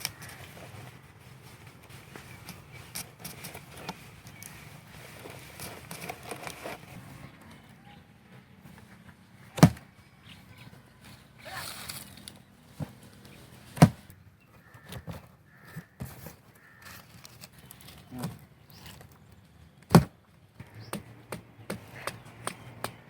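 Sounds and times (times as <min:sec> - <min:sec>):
harsh bird calls: 0:14.4 - 0:19.2.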